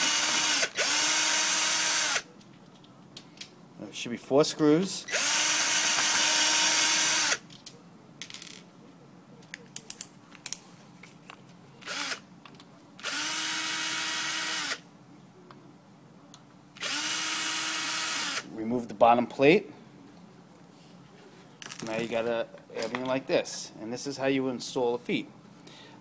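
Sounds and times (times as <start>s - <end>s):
power drill running: 0.0s - 2.3s, 5.1s - 7.4s, 11.8s - 12.2s, 13.0s - 14.8s, 16.8s - 18.4s.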